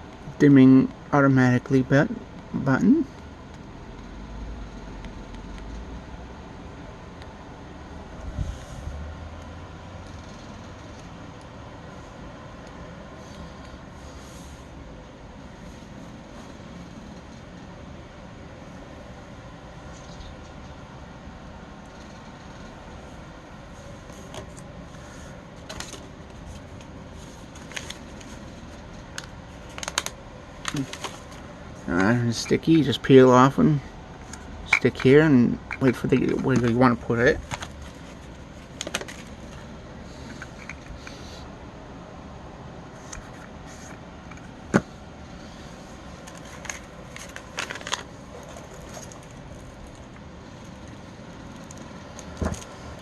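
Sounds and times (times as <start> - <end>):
steady low hum: 0.0 - 53.0
plastic rustling: 46.2 - 50.8.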